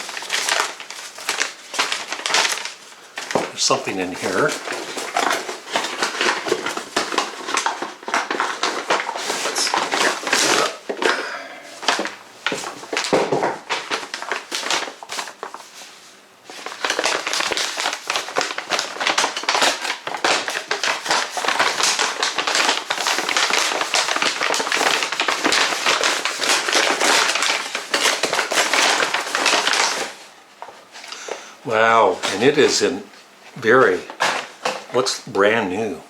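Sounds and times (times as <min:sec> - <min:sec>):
packing material crinkling: 0:00.0 - 0:35.9.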